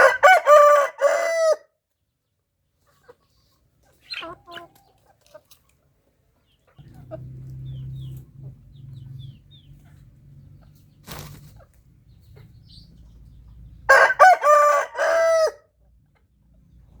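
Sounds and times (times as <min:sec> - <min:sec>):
rooster crowing: 0:00.0 - 0:01.7, 0:13.9 - 0:15.7.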